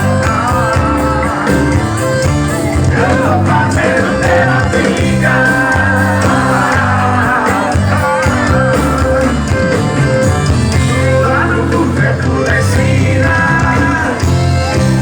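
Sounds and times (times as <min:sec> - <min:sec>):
song with instruments: 0:00.0 - 0:15.0.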